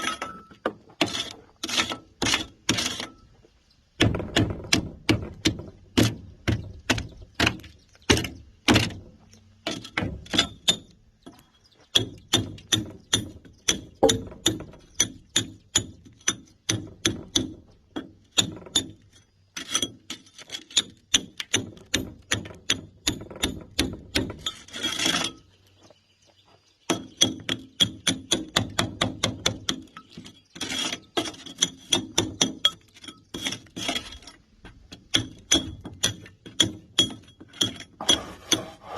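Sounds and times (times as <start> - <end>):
hammer striking steel chisel: 12.0 - 17.5.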